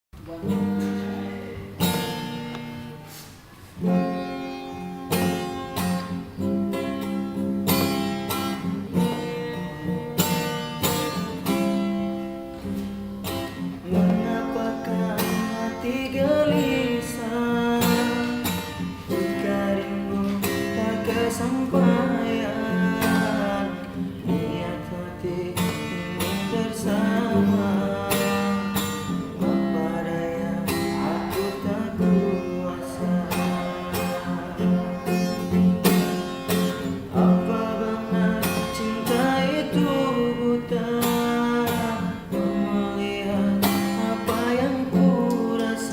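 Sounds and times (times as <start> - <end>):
acoustic guitar strumming: 0.2 - 45.9.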